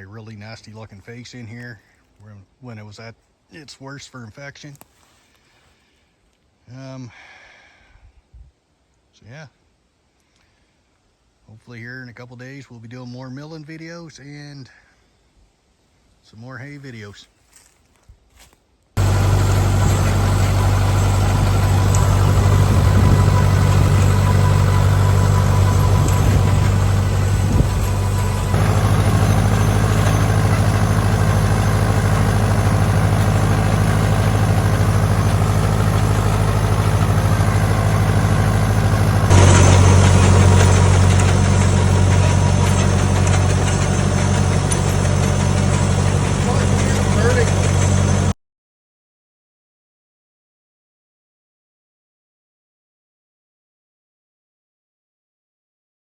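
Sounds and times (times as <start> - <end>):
engine idling with low hum: 19.0 - 48.3.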